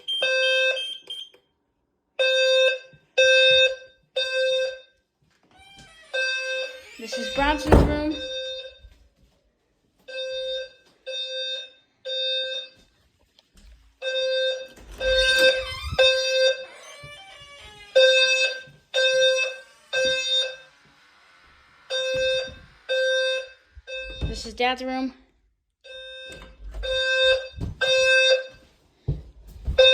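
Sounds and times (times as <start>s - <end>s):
fire alarm horn blasts: 0.0s - 1.3s, 2.2s - 4.9s, 6.1s - 9.0s, 14.0s - 16.8s, 18.0s - 21.1s, 21.8s - 24.7s, 25.8s - 28.7s.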